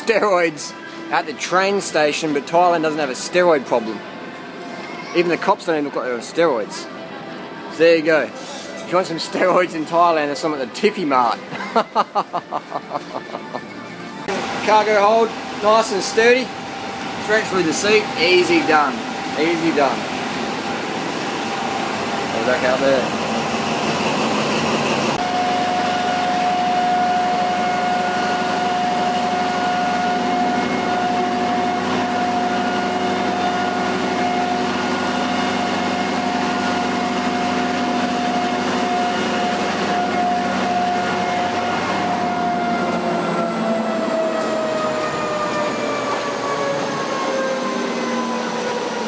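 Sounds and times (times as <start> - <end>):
train running: 0.0 - 49.0
high whine: 14.2 - 49.0.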